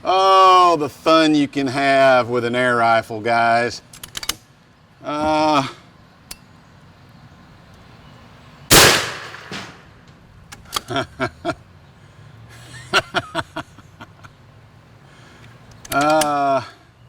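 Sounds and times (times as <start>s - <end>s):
air rifle shot: 8.7s - 10.0s.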